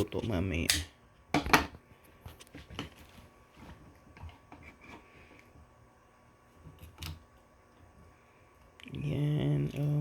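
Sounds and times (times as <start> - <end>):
kitchen handling clicks and knocks: 0.7 - 1.8.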